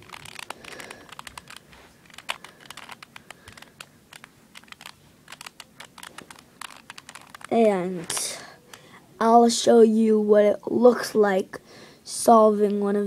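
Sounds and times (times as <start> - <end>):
puzzle cube plastic clicks: 0.0 - 8.9.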